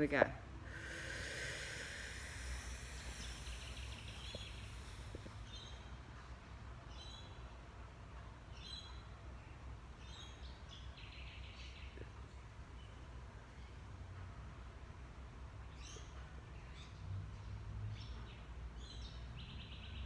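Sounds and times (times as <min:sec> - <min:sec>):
faint background noise: 0:00.0 - 0:20.0
person breathing in deeply: 0:00.6 - 0:05.8
bird chirps: 0:02.4 - 0:05.9.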